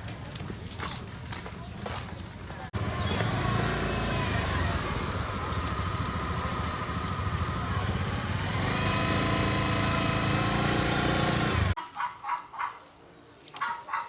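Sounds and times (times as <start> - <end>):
small motorbike engine running: 2.7 - 11.8.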